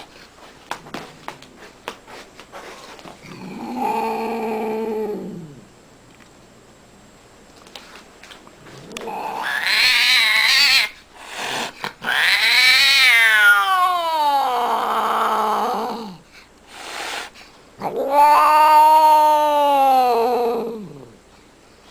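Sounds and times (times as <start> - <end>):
cat yowling: 9.0 - 11.0, 12.0 - 16.2, 17.8 - 21.1.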